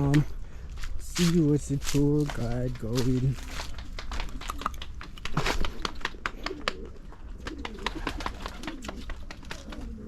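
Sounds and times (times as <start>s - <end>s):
sharp clicks and taps: 2.1s - 6.8s
pigeons cooing: 3.7s - 10.0s.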